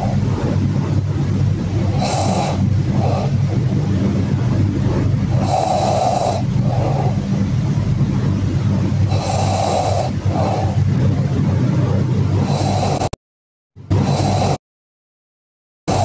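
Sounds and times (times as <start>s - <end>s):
low steady hum: 0.0s - 13.2s
person snoring: 1.8s - 3.6s, 5.3s - 7.2s, 9.0s - 10.9s, 12.4s - 13.2s, 13.9s - 14.6s.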